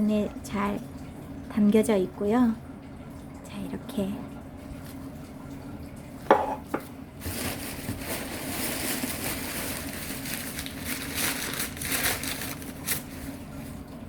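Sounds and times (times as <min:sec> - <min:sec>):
packing material crinkling: 0:07.2 - 0:13.7.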